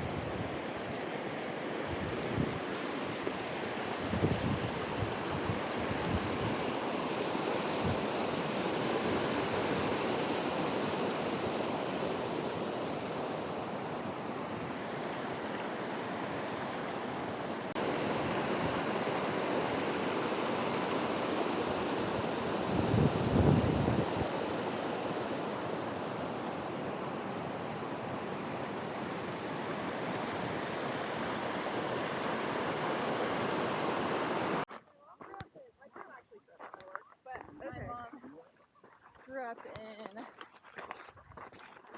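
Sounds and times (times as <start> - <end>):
mountain stream rushing: 0.0 - 34.7
wind buffeting microphone: 4.0 - 6.8, 21.8 - 24.8.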